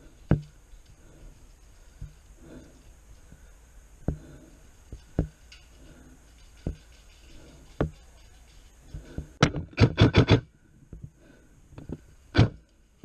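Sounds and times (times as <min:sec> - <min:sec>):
airsoft gunshots: 0:09.4 - 0:10.4.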